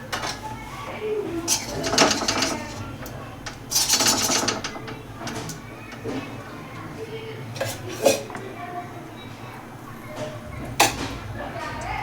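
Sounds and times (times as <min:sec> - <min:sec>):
metal spoon scraping pan: 0:01.3 - 0:06.1.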